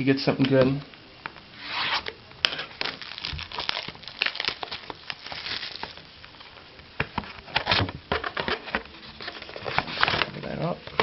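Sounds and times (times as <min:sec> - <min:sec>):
plastic wrapping crinkling and tearing: 0:02.0 - 0:06.6.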